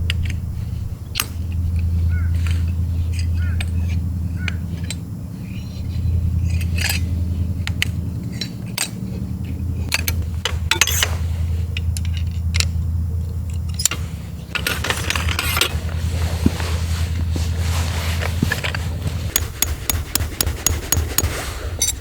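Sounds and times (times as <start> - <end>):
steady low hum: 0.0 - 22.0
metallic clinks and knocks: 6.4 - 16.7
rustling handling: 13.3 - 22.0.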